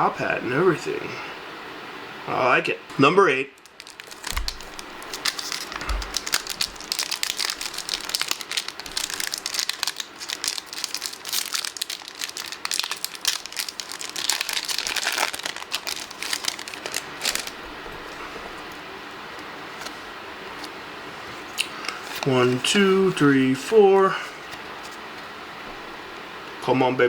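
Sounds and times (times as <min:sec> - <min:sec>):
foil wrapper crinkling: 0:03.6 - 0:18.8, 0:21.6 - 0:22.6.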